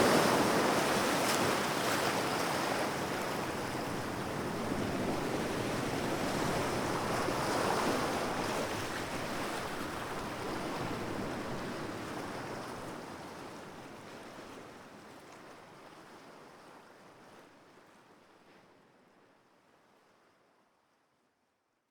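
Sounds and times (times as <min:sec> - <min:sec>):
sea waves breaking: 0:00.0 - 0:13.1.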